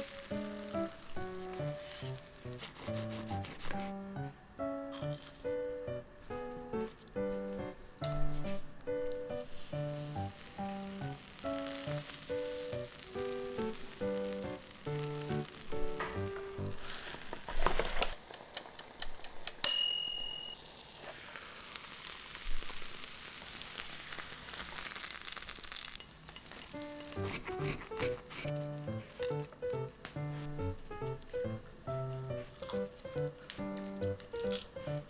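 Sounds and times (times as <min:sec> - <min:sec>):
light background music: 0:00.0 - 0:17.2, 0:26.7 - 0:35.0
croissant sizzling in waffle maker: 0:00.0 - 0:35.0.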